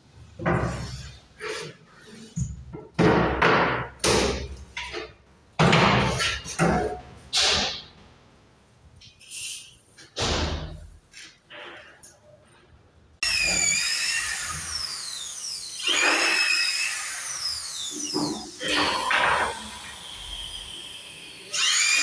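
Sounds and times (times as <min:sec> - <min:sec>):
power tool whining: 0:13.2 - 0:22.0.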